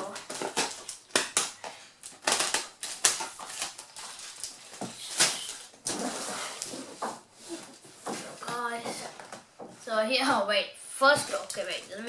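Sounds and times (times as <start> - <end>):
cardboard rustling: 0.0 - 9.5.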